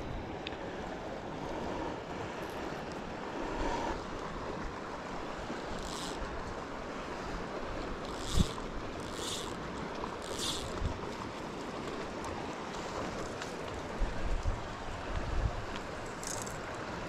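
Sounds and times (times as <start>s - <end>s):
river water rushing: 0.3s - 17.0s
wind on microphone: 8.0s - 9.6s, 14.0s - 16.7s.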